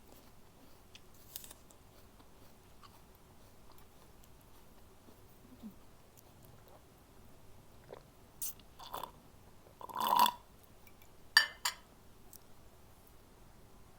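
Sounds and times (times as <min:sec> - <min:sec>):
crunching and chewing apple: 0:00.0 - 0:06.8.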